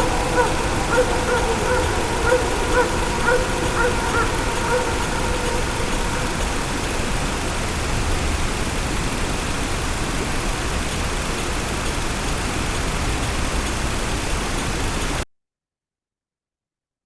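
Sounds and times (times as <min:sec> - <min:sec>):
dog barking: 0:00.0 - 0:07.2
ambient hiss and rumble: 0:00.0 - 0:15.2.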